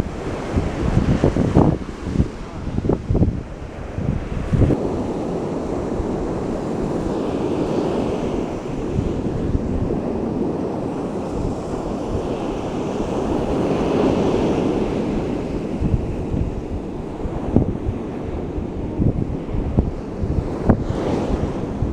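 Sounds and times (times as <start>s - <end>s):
surf washing onto beach: 0.0s - 21.9s
wind gusting on microphone: 0.0s - 21.9s.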